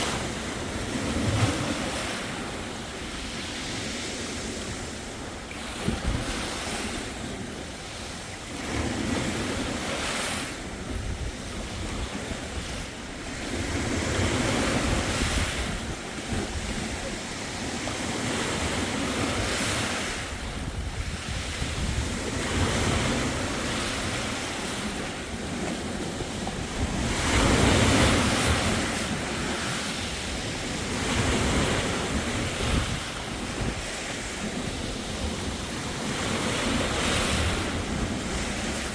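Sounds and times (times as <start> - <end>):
sea waves breaking on beach: 0.0 - 38.9
wind buffeting microphone: 0.0 - 38.9.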